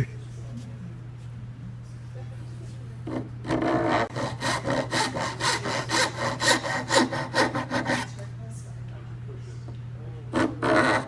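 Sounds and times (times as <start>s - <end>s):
hand saw cutting wood: 3.5s - 8.2s, 10.4s - 11.0s.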